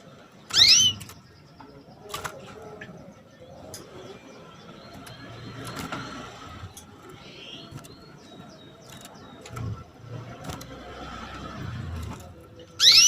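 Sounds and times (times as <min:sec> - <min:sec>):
canary chirping: 0:00.0 - 0:13.0.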